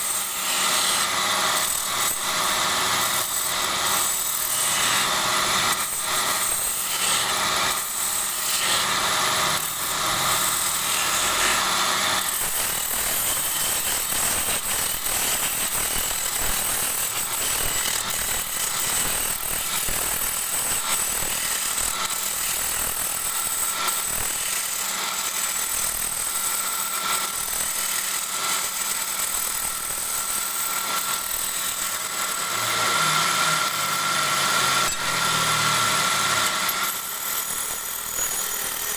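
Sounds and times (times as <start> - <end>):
turning tool cutting wood: 0.0 - 38.9
wood lathe running: 0.0 - 38.9.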